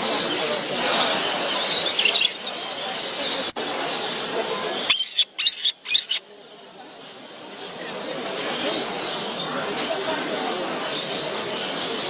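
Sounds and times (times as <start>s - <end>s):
warbling birdsong: 0.0s - 6.3s
crowd babble: 0.0s - 12.0s.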